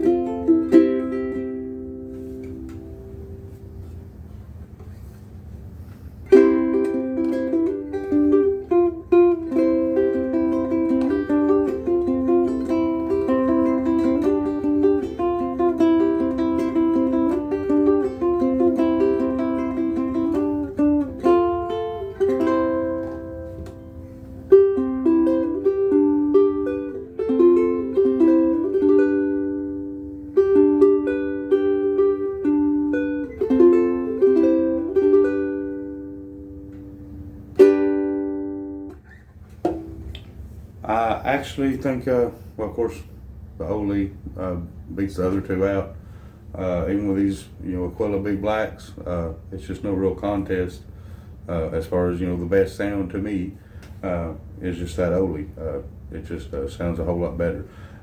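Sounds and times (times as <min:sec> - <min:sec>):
ukulele plucked notes and chords: 0:00.0 - 0:04.1, 0:06.2 - 0:40.7.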